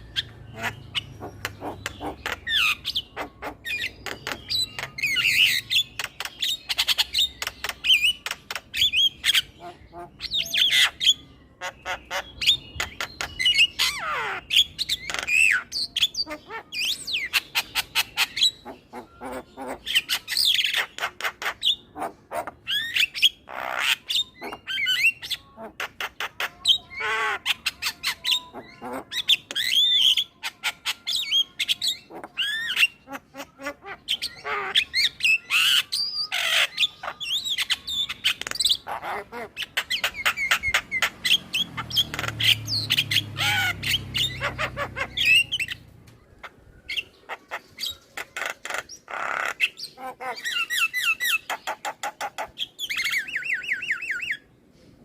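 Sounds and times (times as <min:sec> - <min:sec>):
myna chattering: 0:00.0 - 0:06.8.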